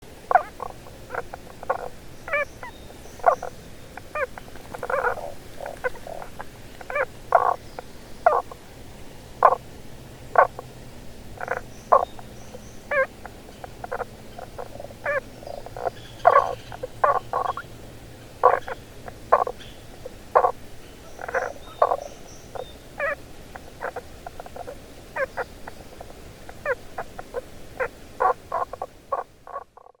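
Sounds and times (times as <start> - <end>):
frog croaking: 0.3 - 8.6, 9.4 - 9.7, 10.3 - 10.7, 11.4 - 17.7, 18.4 - 30.0.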